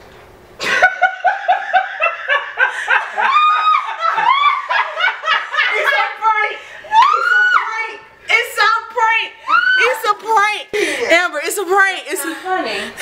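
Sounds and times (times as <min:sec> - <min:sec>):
person laughing hard: 0:00.6 - 0:06.0.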